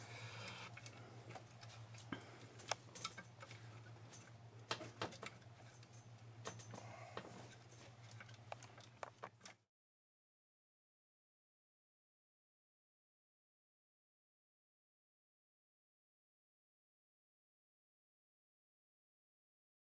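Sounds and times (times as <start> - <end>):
low steady hum: 0.0 - 9.6
clicks and taps of tools: 0.8 - 9.6.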